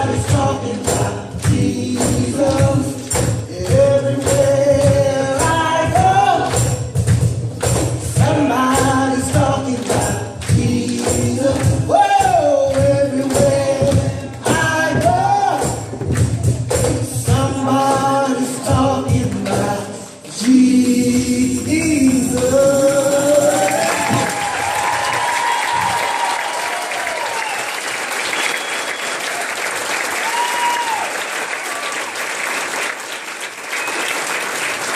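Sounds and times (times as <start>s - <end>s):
gospel singing with instruments: 0.0s - 27.1s
tambourine shaking: 21.1s - 25.3s
audience applause: 22.4s - 34.9s.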